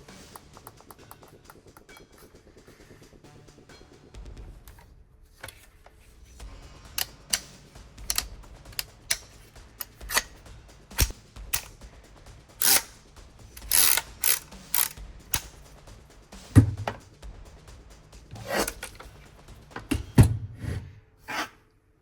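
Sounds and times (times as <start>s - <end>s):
mechanical clicks and clacks: 6.3s - 20.5s
rasping slides: 20.5s - 21.6s.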